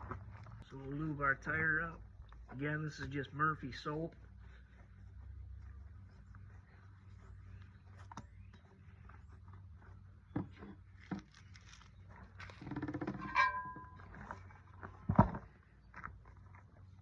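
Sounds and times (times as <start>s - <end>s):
hand tools knocking and clinking: 13.0s - 14.1s.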